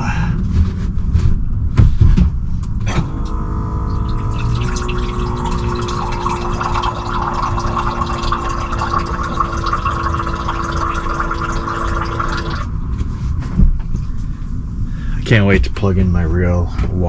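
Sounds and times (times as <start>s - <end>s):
electric pump whirring: 2.7s - 12.9s
water splashing into cup: 2.9s - 12.8s.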